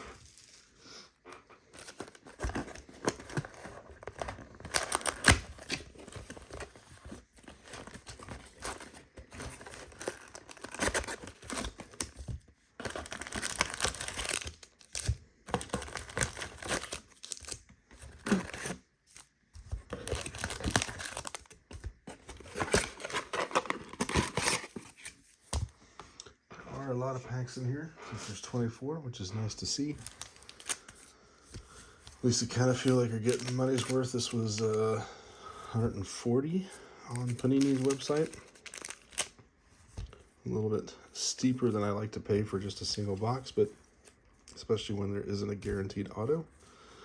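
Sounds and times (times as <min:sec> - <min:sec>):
packaging tearing and rustling: 0:01.6 - 0:25.7, 0:29.8 - 0:31.0, 0:31.8 - 0:34.8, 0:37.1 - 0:39.4.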